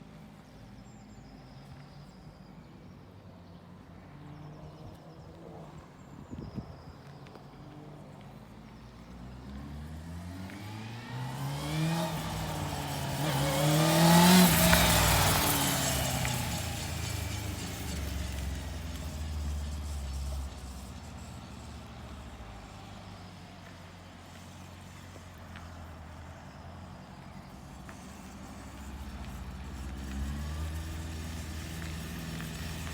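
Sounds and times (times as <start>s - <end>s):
motorcycle engine idling: 12.0s - 32.9s.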